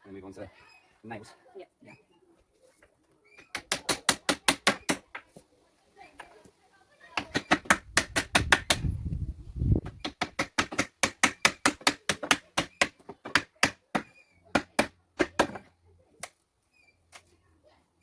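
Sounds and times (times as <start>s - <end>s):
hammer striking nails in wood: 3.4s - 5.2s, 7.2s - 8.9s, 9.8s - 15.7s.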